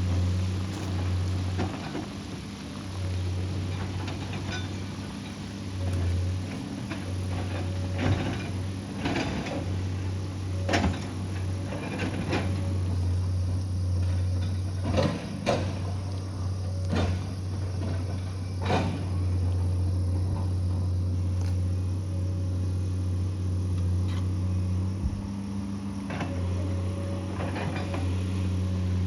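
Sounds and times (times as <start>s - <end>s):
diesel engine humming: 0.0s - 29.0s
excavator clanks and scrapes: 0.0s - 29.0s.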